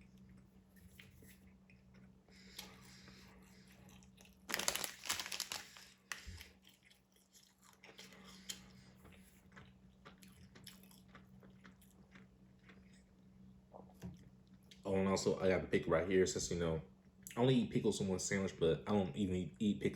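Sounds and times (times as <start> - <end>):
crunchy biting and chewing: 3.6 - 13.2
wet chewing clicks: 3.9 - 13.1.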